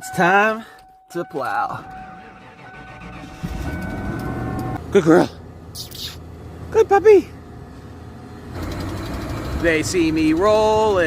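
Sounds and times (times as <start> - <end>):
vehicle engine rumbling: 1.3 - 11.0.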